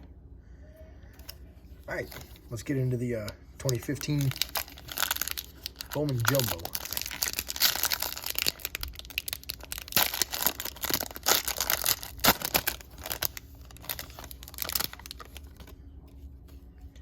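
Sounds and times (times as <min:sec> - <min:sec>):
wrapper tearing and crinkling: 0:03.6 - 0:15.7.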